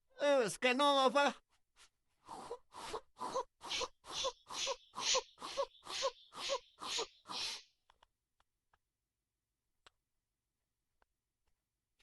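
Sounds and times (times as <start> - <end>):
person blowing breathy puffs: 2.2 - 7.8.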